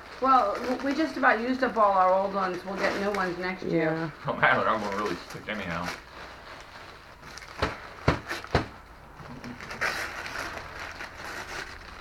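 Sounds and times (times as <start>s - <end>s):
gift wrapping rustling: 0.0s - 12.0s
sharp knocks: 7.6s - 8.8s.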